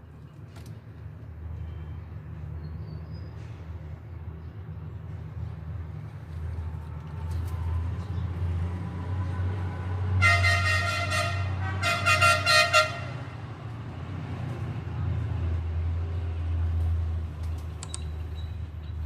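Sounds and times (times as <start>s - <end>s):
low rumble of engines: 0.0s - 19.0s
vehicle horn blasts: 10.2s - 13.2s.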